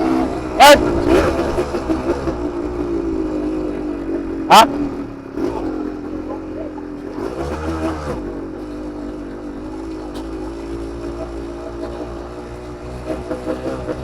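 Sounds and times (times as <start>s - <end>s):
two-stroke motorcycle engine idling: 0.0s - 14.0s.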